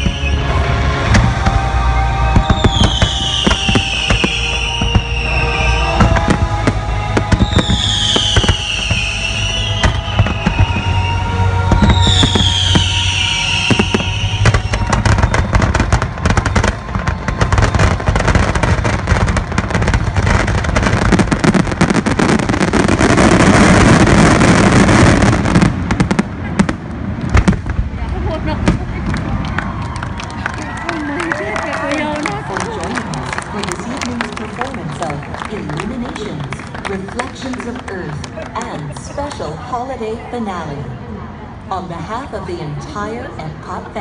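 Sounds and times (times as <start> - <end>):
falling firework whistles: 0.0 - 0.5, 2.3 - 6.4, 7.2 - 18.8
show music: 0.0 - 26.2
fireworks bangs and crackles: 0.0 - 39.7.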